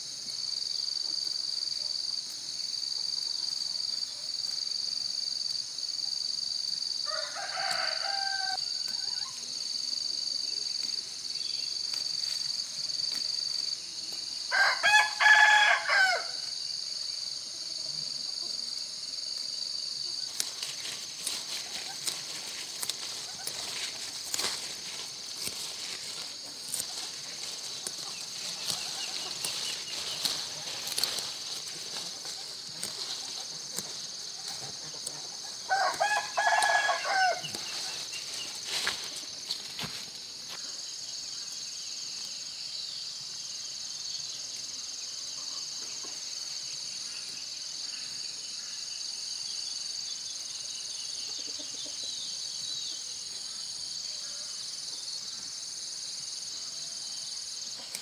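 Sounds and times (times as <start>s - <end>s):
insect chorus: 0.0s - 58.0s
rooster crowing: 7.0s - 8.9s, 14.4s - 16.5s, 35.1s - 39.1s.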